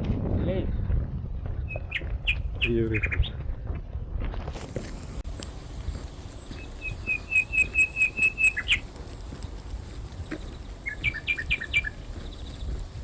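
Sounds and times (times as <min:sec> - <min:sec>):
songbird singing: 0:01.6 - 0:03.4, 0:05.0 - 0:13.0.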